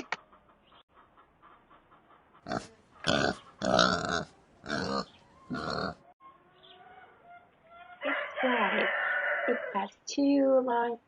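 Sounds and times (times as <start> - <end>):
pig oinking: 2.4 - 6.0.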